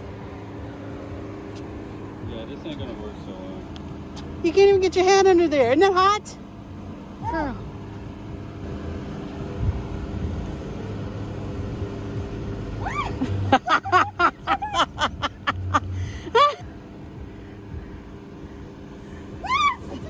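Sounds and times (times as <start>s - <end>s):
car engine idling: 0.0s - 20.0s
high yelping cries: 12.8s - 14.8s, 19.4s - 20.0s.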